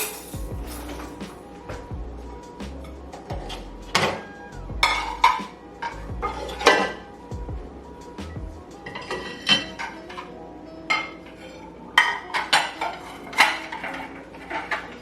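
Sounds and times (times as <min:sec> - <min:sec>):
utensils clinking against pots: 0:00.0 - 0:01.4, 0:03.2 - 0:07.1, 0:08.8 - 0:15.0.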